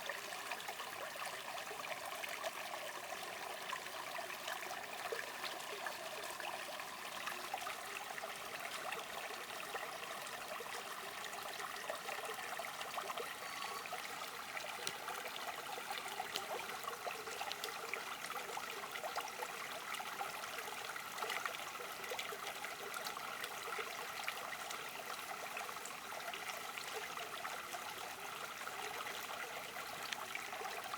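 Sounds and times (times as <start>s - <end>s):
spring water trickling and splashing: 0.0s - 30.9s.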